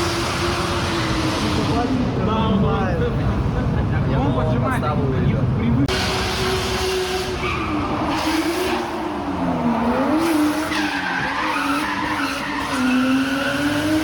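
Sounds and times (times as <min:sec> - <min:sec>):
car engine at high revs: 0:00.0 - 0:02.5, 0:05.9 - 0:14.0
tyres skidding: 0:00.0 - 0:04.2, 0:05.9 - 0:14.0.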